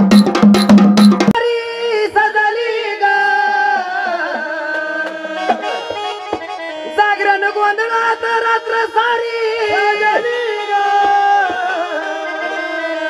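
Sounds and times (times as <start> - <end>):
drumming: 0.0 - 1.4.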